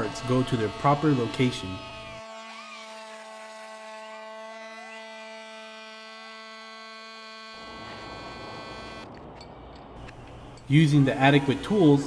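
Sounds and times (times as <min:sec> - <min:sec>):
engraving pen buzzing: 0:00.0 - 0:09.1.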